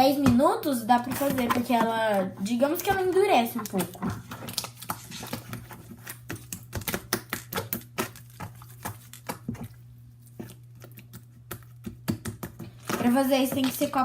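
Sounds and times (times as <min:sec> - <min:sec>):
slime clicking and popping: 0:06.2 - 0:08.3.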